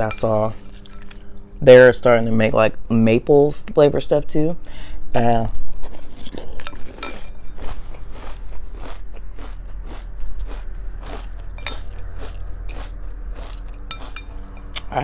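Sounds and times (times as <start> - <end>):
chewing crunchy cereal: 5.5 - 15.0.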